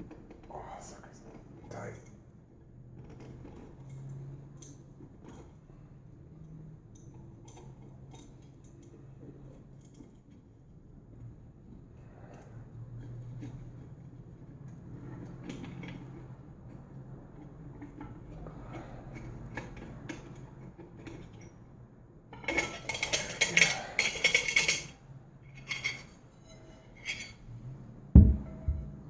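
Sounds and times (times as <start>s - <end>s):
small metal parts clinking: 22.4s - 26.2s.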